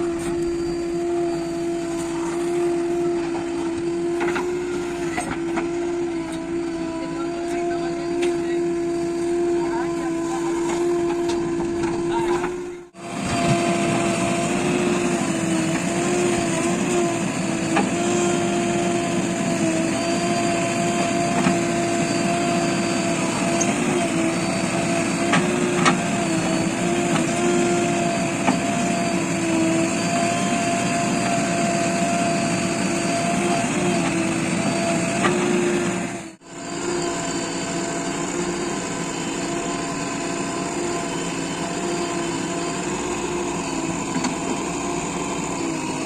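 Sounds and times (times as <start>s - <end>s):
heavy diesel machinery whine: 0.0s - 46.0s.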